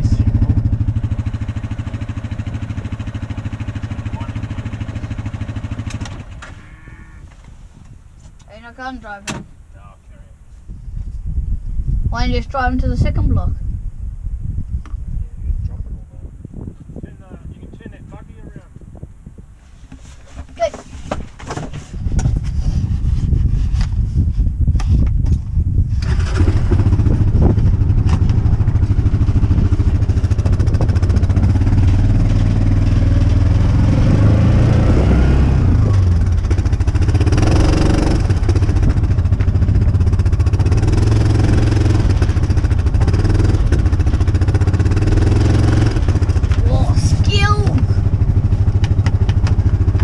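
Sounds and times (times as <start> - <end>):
small vehicle engine running: 0.0 - 6.6, 25.9 - 50.0.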